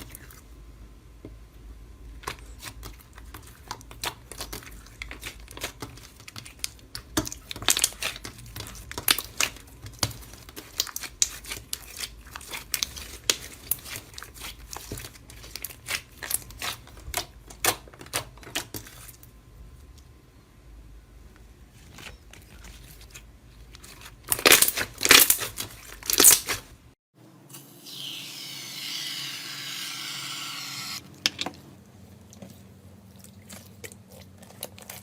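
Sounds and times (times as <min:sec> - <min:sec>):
slime crackling and popping: 0:24.0 - 0:26.6.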